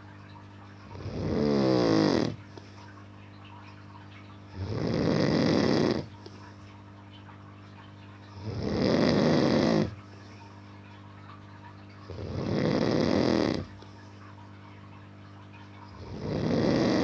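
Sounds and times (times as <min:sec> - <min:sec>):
steady low hum: 0:00.0 - 0:17.0
man snoring: 0:00.9 - 0:02.4, 0:04.6 - 0:06.1, 0:08.4 - 0:10.0, 0:12.1 - 0:13.7, 0:16.0 - 0:17.0.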